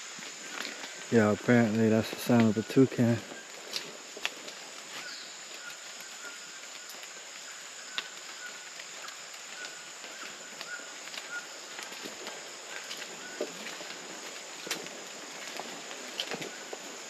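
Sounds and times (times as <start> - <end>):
insects droning: 0.0 - 17.0
distant toucan calling: 4.5 - 14.1.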